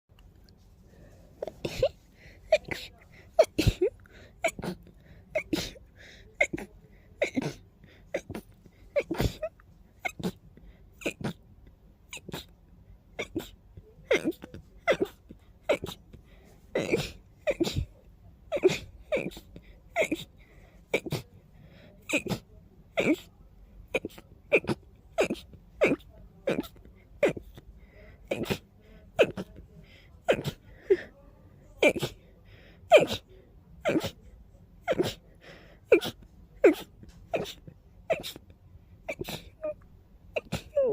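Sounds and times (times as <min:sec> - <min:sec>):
person sneezing: 0:01.4 - 0:10.4, 0:13.2 - 0:17.9, 0:18.5 - 0:20.3, 0:22.0 - 0:22.4, 0:23.9 - 0:27.6, 0:28.3 - 0:28.6, 0:29.2 - 0:29.6, 0:30.2 - 0:31.1, 0:31.8 - 0:32.3, 0:32.9 - 0:34.2, 0:34.8 - 0:38.4, 0:39.1 - 0:39.8, 0:40.4 - 0:40.9.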